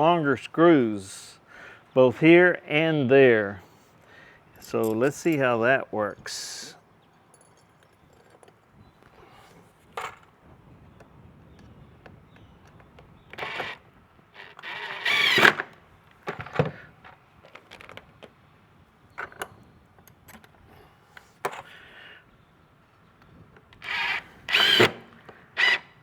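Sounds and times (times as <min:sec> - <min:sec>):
clatter of parts handled: 0:07.3 - 0:08.6
cordless drill running: 0:13.4 - 0:13.8, 0:14.4 - 0:15.7, 0:23.8 - 0:26.0.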